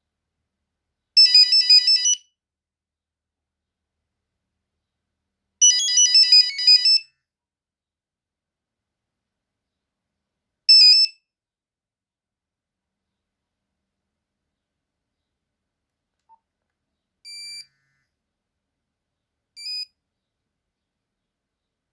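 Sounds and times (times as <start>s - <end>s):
beeping phone ringtone: 5.6s - 7.1s.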